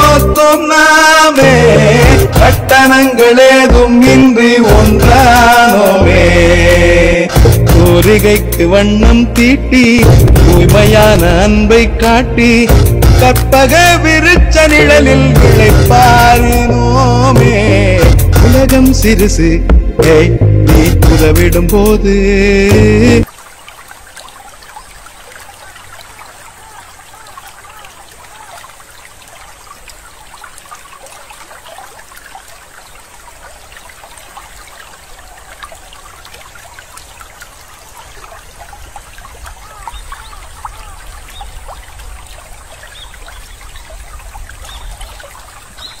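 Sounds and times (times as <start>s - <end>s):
water trickling and babbling: 0.0s - 19.3s, 21.3s - 46.0s
low rumble: 10.0s - 13.3s.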